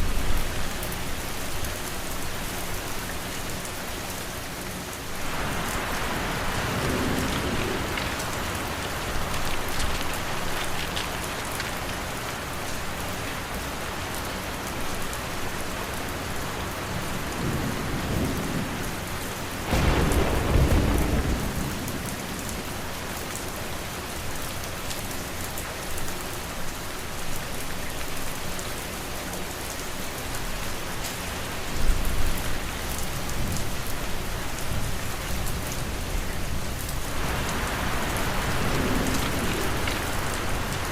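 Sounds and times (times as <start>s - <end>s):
steady rain: 0.0s - 40.9s
thunder rumble: 5.2s - 12.4s, 17.2s - 22.9s, 34.7s - 40.9s.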